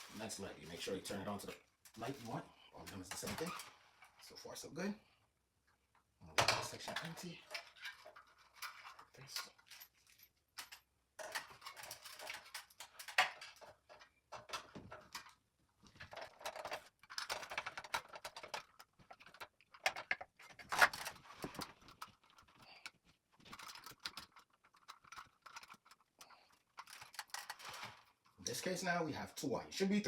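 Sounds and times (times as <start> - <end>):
electrical wires scratching and rustling: 0.0 - 4.3, 11.3 - 28.9.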